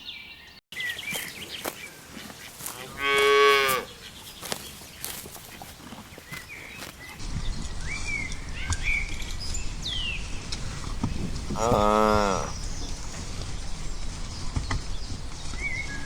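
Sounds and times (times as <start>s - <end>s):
cow mooing: 2.7s - 4.0s, 11.6s - 12.6s
low rumble: 7.2s - 16.0s.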